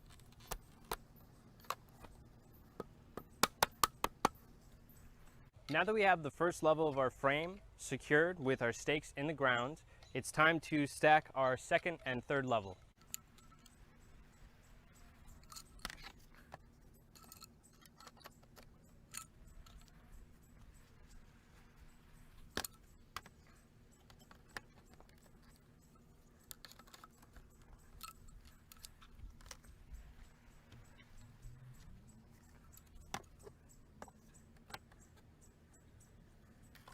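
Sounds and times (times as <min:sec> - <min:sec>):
low steady hum: 0:11.0 - 0:36.9.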